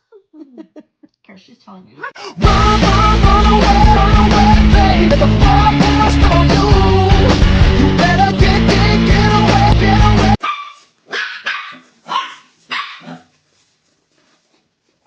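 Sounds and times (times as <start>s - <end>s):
loud music: 2.4s - 10.4s
dog barking: 10.4s - 13.3s.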